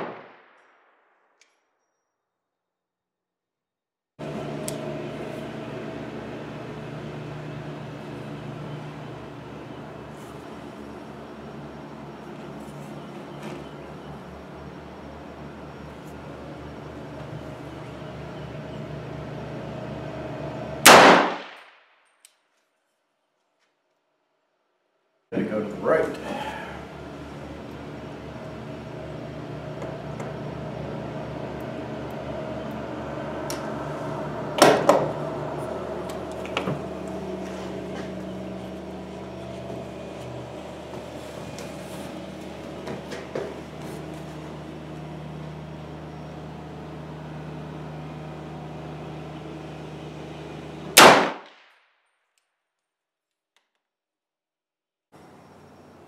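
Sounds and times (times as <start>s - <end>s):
rifle shots: 0.0s - 0.8s, 20.8s - 21.8s, 51.0s - 51.7s
steady background hum: 4.2s - 21.8s, 25.3s - 51.6s, 55.2s - 56.0s.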